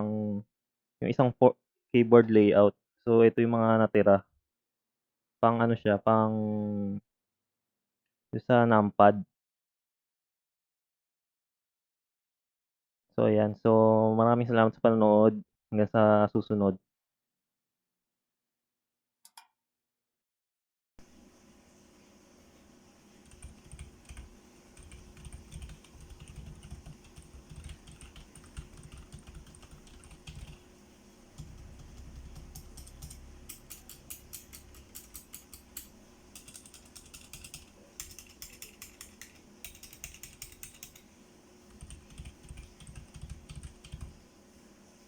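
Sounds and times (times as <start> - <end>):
mechanical keyboard typing: 23.2 - 30.6, 31.4 - 41.1, 41.7 - 44.2.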